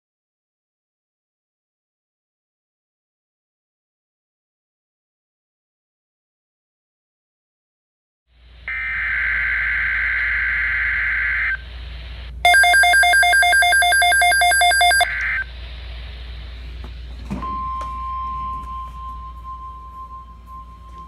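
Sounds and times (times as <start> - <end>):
steady warning alarm tone: 12.4 - 15.5, 17.4 - 21.0
warbling data-tone bursts: 12.4 - 15.5.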